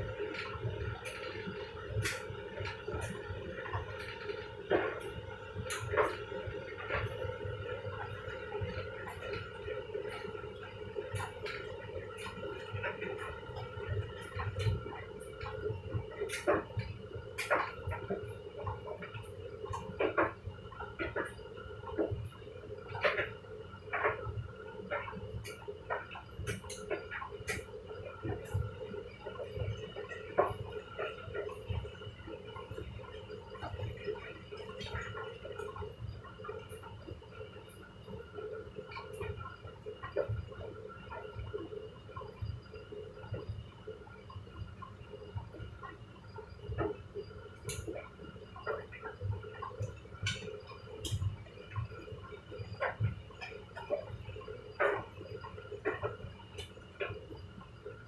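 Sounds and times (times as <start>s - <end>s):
washer-dryer drums turning: 0.0s - 22.2s, 47.6s - 57.4s.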